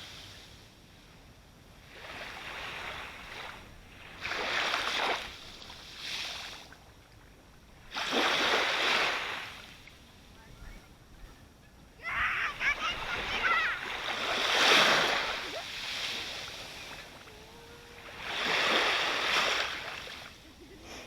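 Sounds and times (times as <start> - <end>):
sea waves breaking: 1.8 - 6.8, 7.8 - 9.9, 12.0 - 21.0.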